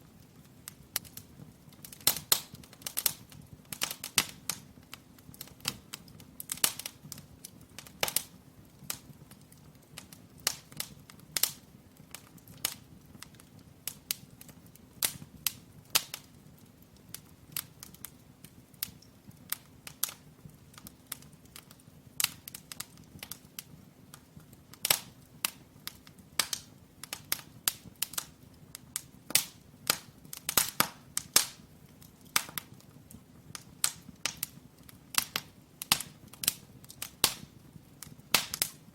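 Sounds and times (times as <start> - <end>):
firewood crackling and popping: 0.0 - 38.9.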